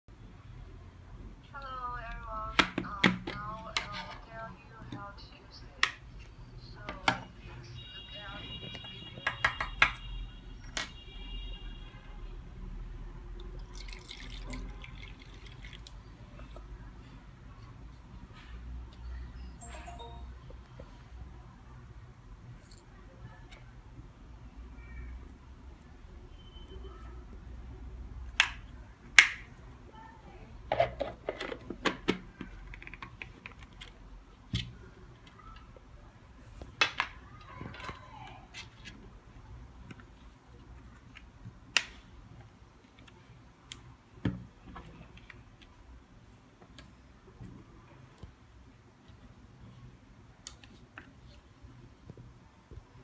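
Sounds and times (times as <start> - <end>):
water dripping and trickling: 13.3 - 16.7.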